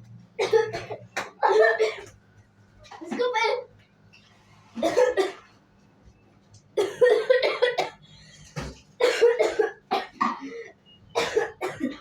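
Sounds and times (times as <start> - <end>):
person coughing: 0.4 - 2.1, 4.8 - 5.5, 6.8 - 8.0, 9.0 - 12.0.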